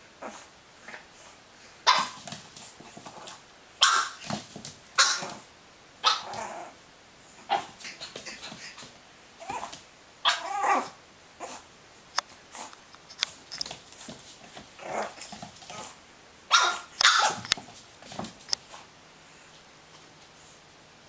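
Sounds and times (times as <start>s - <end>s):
puppy barking and growling: 1.8s - 2.2s, 3.0s - 6.8s, 7.4s - 8.8s, 9.4s - 11.7s, 14.7s - 17.6s.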